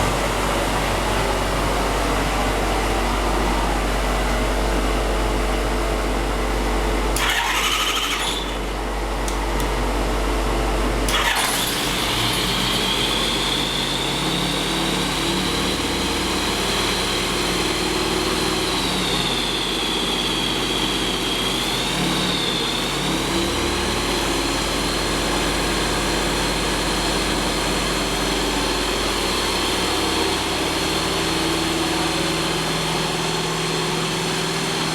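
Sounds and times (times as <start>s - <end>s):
engine starter turning over: 7.2s - 9.7s, 11.0s - 14.7s.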